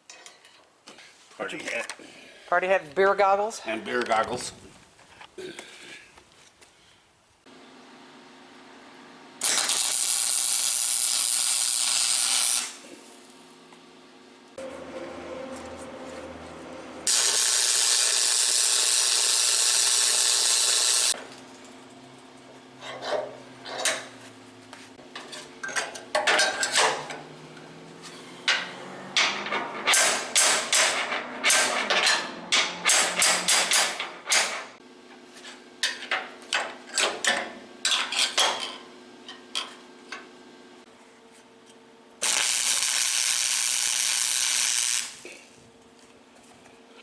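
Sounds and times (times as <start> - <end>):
hammer clanking on steel: 28.4 - 34.8.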